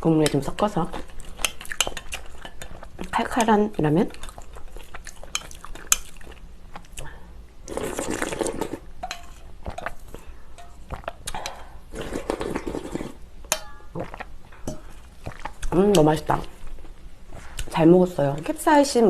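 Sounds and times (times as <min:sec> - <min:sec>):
slurping noodles and broth: 0:07.0 - 0:08.9, 0:10.9 - 0:13.2.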